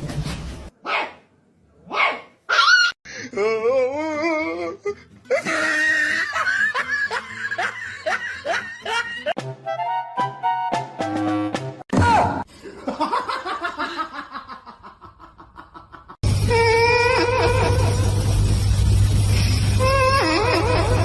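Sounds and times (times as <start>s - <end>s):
music: 4.3s - 11.8s
laughter: 5.3s - 9.4s, 12.6s - 16.2s, 17.2s - 18.4s.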